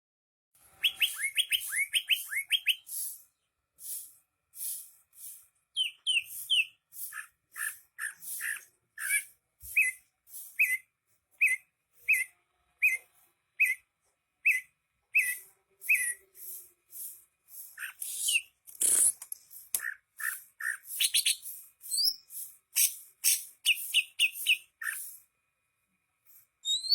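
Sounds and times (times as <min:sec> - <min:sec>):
bird singing whistled notes: 0:00.8 - 0:03.2, 0:05.7 - 0:16.6, 0:17.7 - 0:19.0, 0:19.8 - 0:25.1, 0:26.6 - 0:26.9.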